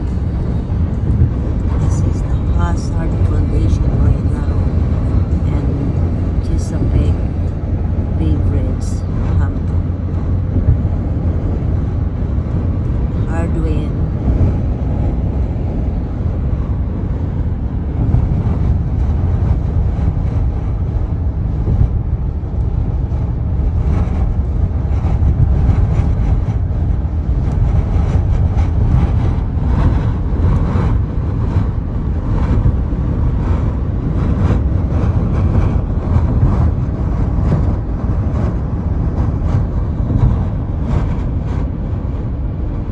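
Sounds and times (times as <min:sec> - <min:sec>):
strong wind on microphone: 0:00.0 - 0:42.9.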